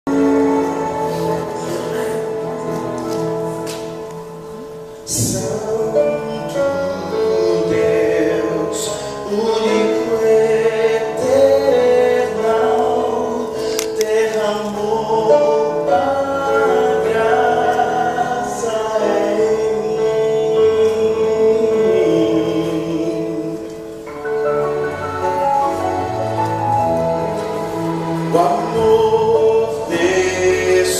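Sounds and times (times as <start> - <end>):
gospel choir singing: 0.1 - 4.1, 5.0 - 23.7, 24.7 - 30.9
instrumental accompaniment: 0.1 - 30.9.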